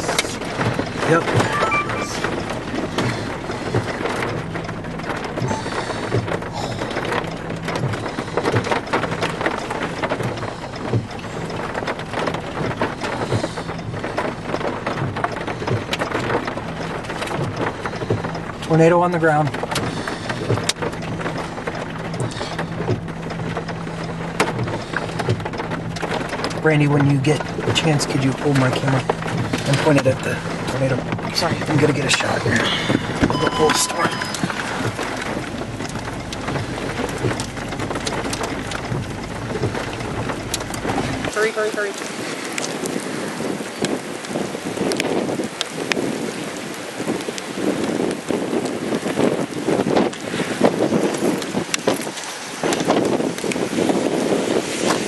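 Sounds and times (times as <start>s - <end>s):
rain falling hard: 0.0s - 55.0s.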